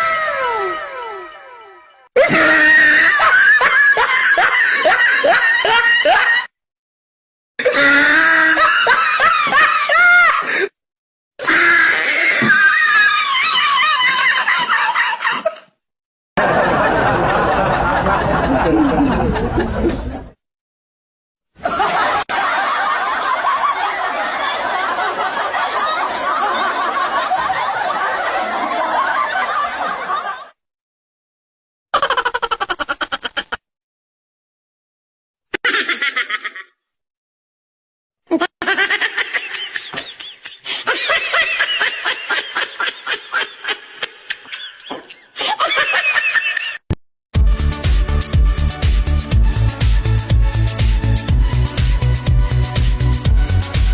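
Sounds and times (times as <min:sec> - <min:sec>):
high-pitched laughter: 0:00.0 - 0:06.5, 0:16.8 - 0:20.2, 0:32.0 - 0:33.6, 0:35.5 - 0:36.8, 0:38.3 - 0:46.9
dense continuous laughter: 0:16.4 - 0:20.4, 0:21.6 - 0:30.6.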